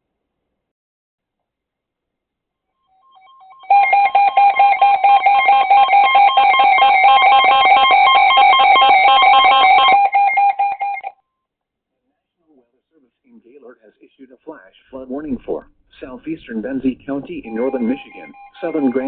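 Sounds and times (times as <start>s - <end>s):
rapid electronic alert beeping: 3.2s - 11.1s, 17.1s - 19.0s.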